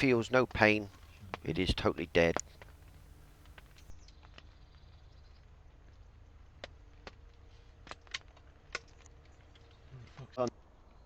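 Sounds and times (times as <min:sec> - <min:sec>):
faint low hum: 0:00.0 - 0:07.8.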